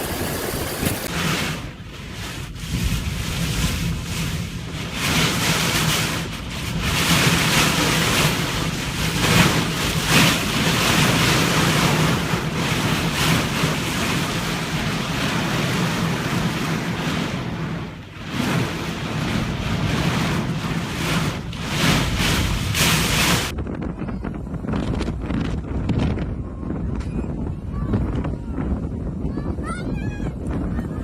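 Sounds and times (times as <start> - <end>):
rushing water: 0.0 - 1.2
rushing wind: 0.0 - 31.0
wind buffeting microphone: 0.0 - 31.0.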